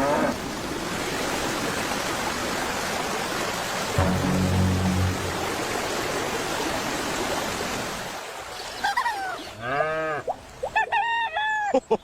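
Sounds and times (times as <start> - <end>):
rain hissing: 3.9 - 6.6
low hum: 4.0 - 6.1.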